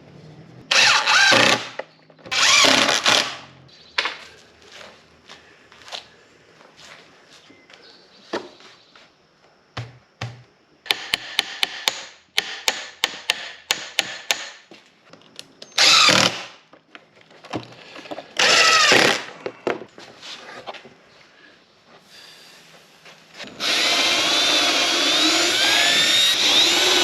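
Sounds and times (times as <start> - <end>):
power drill running: 0.7 - 3.4, 18.4 - 19.2, 23.4 - 27.0.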